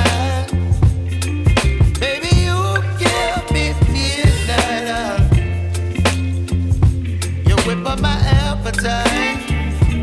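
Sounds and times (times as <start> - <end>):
heavy bass: 0.0 - 10.0
steady drum beat: 0.0 - 10.0
person singing melody: 2.0 - 6.0, 7.5 - 10.0.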